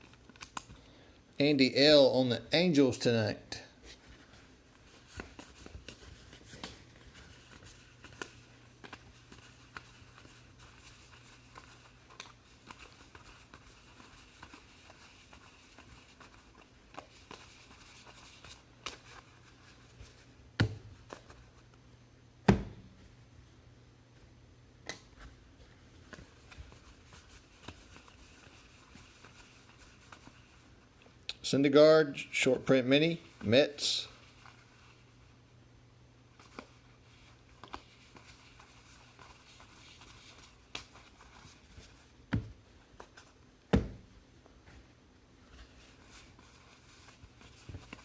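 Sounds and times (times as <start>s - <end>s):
cards clicking and sliding: 0.0s - 0.8s
faint steady hum: 0.0s - 48.0s.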